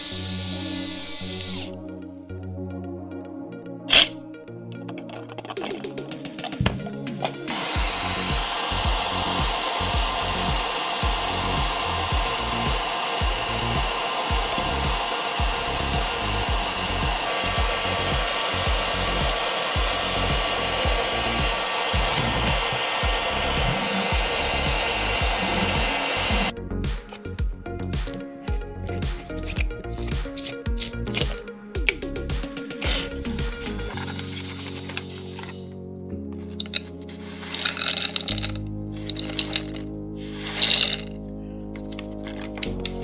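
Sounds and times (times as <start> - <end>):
background music with steady beat: 0.0 - 43.0
blower rushing noise: 5.6 - 27.2, 28.0 - 35.7.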